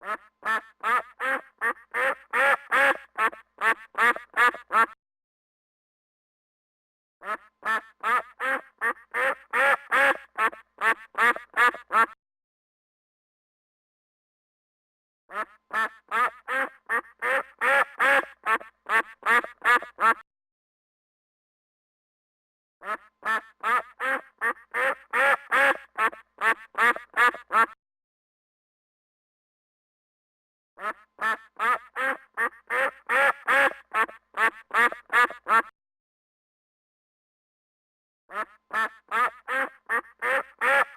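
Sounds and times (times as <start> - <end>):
duck quacking: 0.0 - 5.0, 7.2 - 12.2, 15.3 - 20.2, 22.8 - 27.8, 30.8 - 35.7, 38.3 - 40.9.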